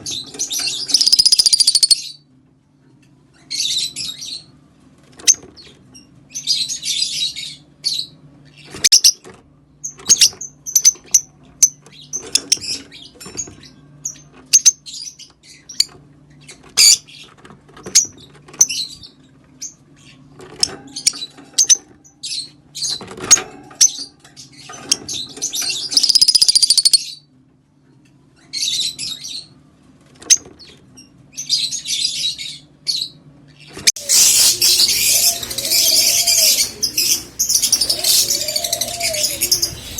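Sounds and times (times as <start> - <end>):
lovebirds chirping and chattering: 0.0 - 2.2, 23.8 - 27.2, 33.9 - 39.9.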